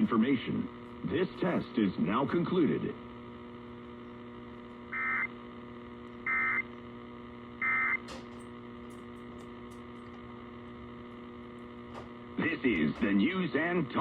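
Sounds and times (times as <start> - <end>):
steady mains hum: 0.0 - 14.0
buzzy digital data tones: 4.9 - 5.4, 6.2 - 6.7, 7.6 - 8.0.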